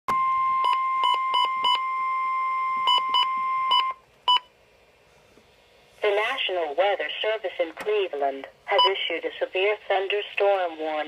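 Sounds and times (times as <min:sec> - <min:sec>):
steady high alarm tone: 0:00.1 - 0:04.0
short beeps: 0:00.1 - 0:04.5.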